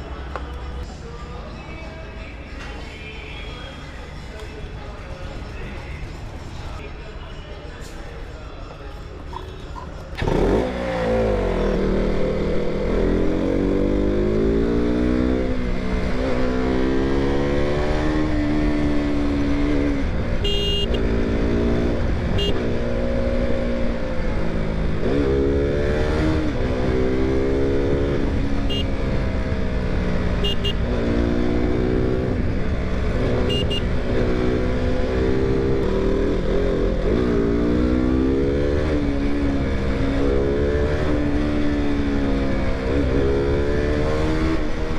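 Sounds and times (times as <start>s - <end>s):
wind and road noise: 8.9s - 44.9s
motorcycle engine accelerating: 10.1s - 44.9s.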